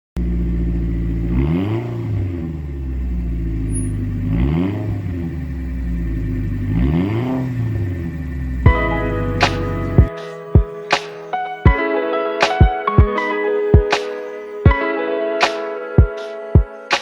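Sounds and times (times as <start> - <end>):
engine idling and revving: 0.2 - 10.1.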